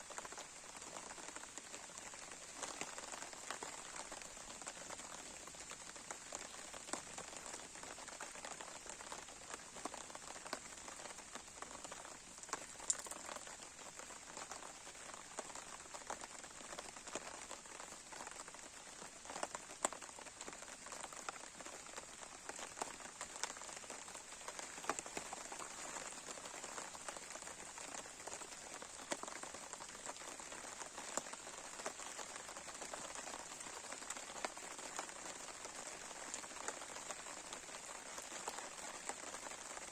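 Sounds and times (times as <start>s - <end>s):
campfire wood crackling: 12.4s - 13.6s.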